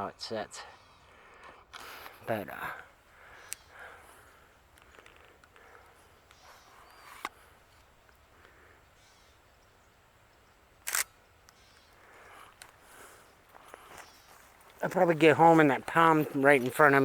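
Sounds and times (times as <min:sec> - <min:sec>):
faint outdoor background: 0:00.0 - 0:17.0
camera shutter clicks: 0:10.8 - 0:11.8.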